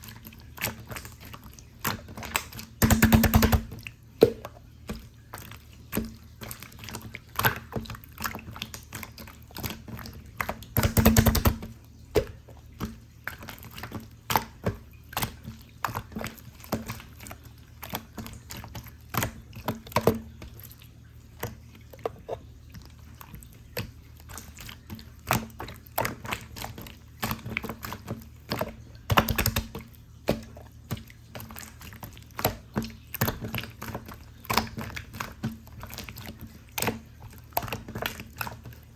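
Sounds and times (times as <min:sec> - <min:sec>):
slime squelches: 0:00.0 - 0:38.9
slime clicking and popping: 0:01.8 - 0:05.0, 0:10.4 - 0:12.4.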